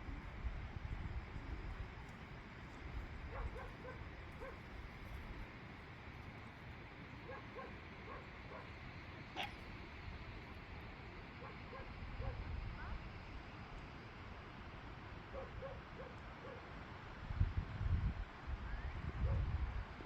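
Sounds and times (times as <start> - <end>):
wind rumble on microphone: 0.0 - 5.5, 11.7 - 13.5, 17.0 - 20.0.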